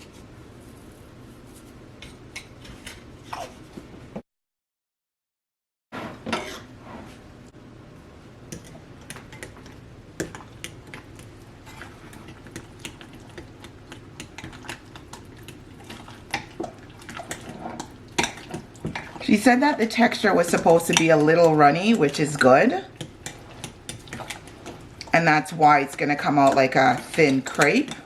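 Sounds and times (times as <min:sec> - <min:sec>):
utensil clinking against mixing bowl: 0:08.6 - 0:28.0.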